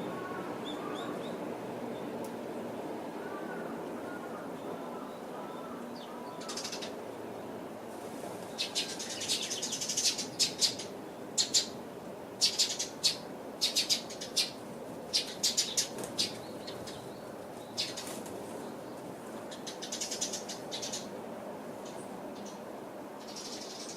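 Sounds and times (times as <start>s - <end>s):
faint background hum: 0.0s - 23.9s
birds rustling and pecking: 15.9s - 19.5s.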